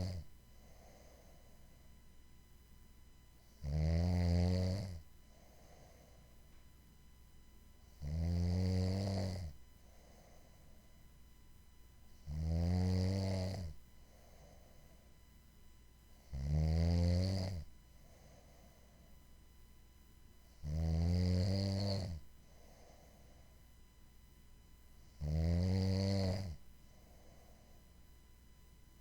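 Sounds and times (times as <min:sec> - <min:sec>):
loud rattling snores: 0:00.0 - 0:00.2, 0:03.6 - 0:05.0, 0:08.0 - 0:09.6, 0:12.3 - 0:13.8, 0:16.3 - 0:17.7, 0:20.6 - 0:22.2, 0:25.2 - 0:26.6
quiet breathing: 0:00.0 - 0:03.8, 0:04.6 - 0:12.4, 0:13.4 - 0:16.6, 0:17.4 - 0:20.8, 0:21.7 - 0:28.4.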